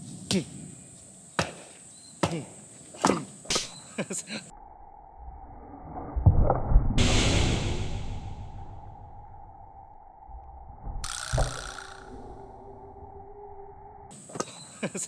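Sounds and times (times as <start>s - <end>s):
axe chopping hard wood: 1.4s - 3.7s
loud rumbling noise: 7.0s - 11.1s.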